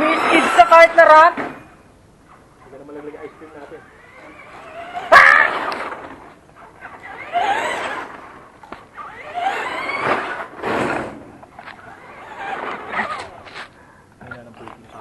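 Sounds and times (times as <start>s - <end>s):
electric motor whining: 3.3s - 13.5s.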